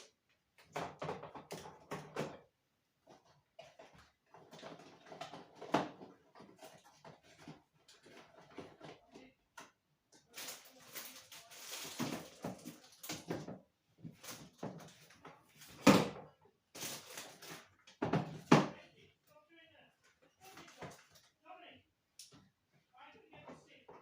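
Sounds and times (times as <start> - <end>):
boxes knocking and clattering: 0.6 - 2.5, 3.1 - 9.1, 11.6 - 18.8
packets rustling: 10.3 - 13.3, 16.7 - 17.8.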